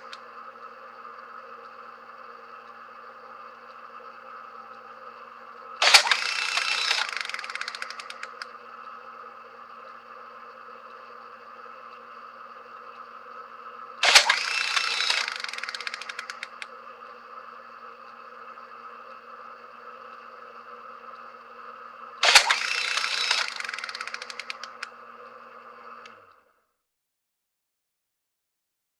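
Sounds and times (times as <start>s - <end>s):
camera winding whir: 0.0s - 5.2s, 5.8s - 21.6s, 22.2s - 26.5s
camera shutter click: 5.8s - 8.4s, 14.0s - 16.6s, 22.2s - 24.8s.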